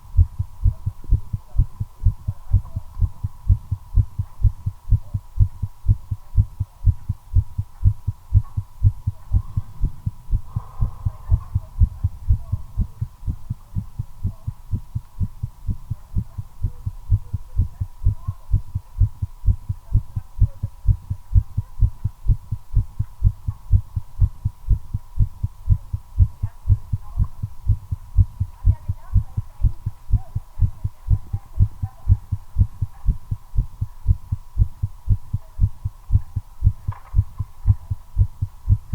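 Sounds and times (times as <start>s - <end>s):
heartbeat thumps: 0.0s - 38.9s.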